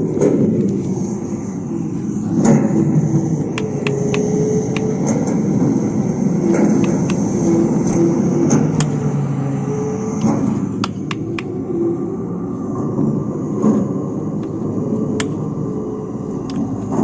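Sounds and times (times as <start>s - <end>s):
sharp clicks: 2.1s - 11.6s.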